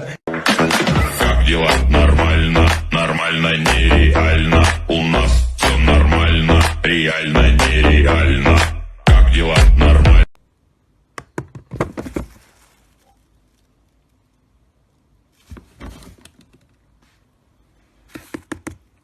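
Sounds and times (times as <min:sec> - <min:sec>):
loud music: 0:00.3 - 0:10.3.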